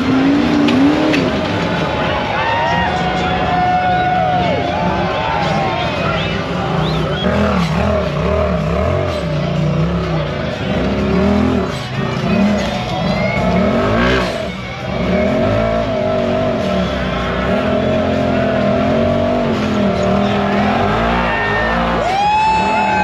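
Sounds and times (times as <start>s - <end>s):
off-road vehicle engines revving: 0.0s - 23.0s.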